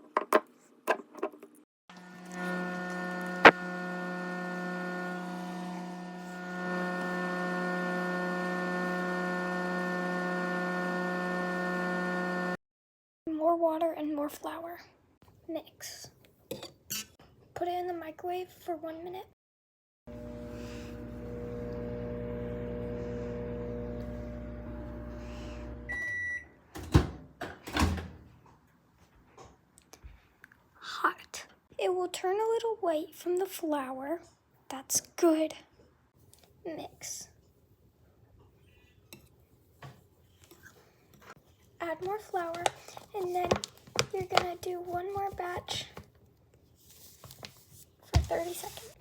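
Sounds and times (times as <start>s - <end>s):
microwave oven humming: 1.9s - 12.6s, 20.1s - 26.5s
microwave beep: 25.8s - 26.6s.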